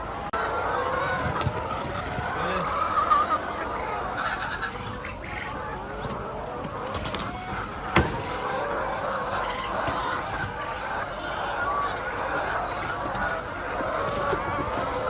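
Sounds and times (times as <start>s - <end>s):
chickens clucking: 0.0s - 15.0s.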